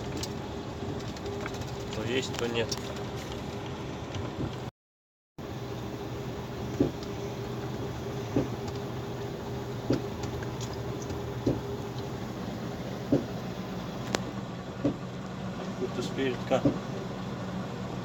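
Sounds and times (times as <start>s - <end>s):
engine and road drone: 0.0s - 4.7s, 5.4s - 18.0s
dull knock from wheel: 6.8s - 7.0s, 8.4s - 8.6s, 9.8s - 10.4s, 11.4s - 11.7s, 13.1s - 13.4s, 14.8s - 15.0s, 16.6s - 16.8s.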